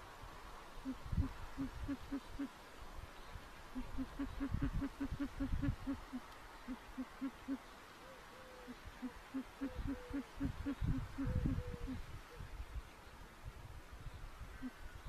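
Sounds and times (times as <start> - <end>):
owl hooting: 0.8 - 2.6, 3.8 - 12.0.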